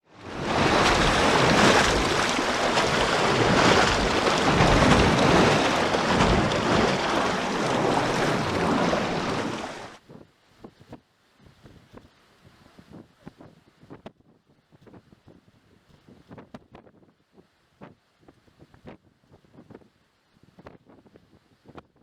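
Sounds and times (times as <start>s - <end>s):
waterfall rushing: 0.2s - 10.0s.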